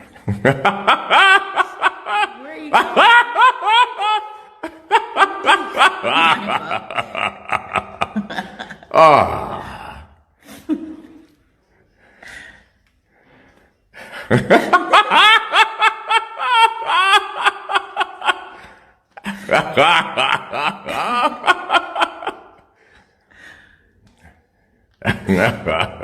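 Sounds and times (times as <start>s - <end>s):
person laughing: 0.5s - 9.8s, 14.3s - 18.6s.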